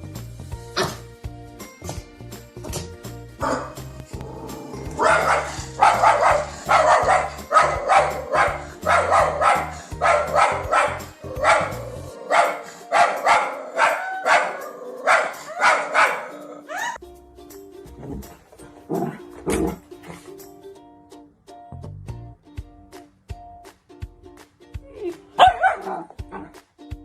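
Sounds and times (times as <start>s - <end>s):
background music: 0.0s - 27.0s
dog barking: 3.4s - 3.8s, 5.0s - 17.0s, 25.4s - 26.6s.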